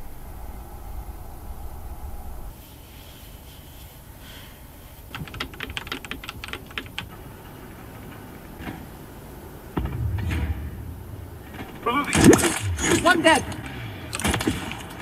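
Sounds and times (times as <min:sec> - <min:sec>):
keyboard keys clicking: 0:05.1 - 0:07.1
low thump: 0:09.8 - 0:14.0.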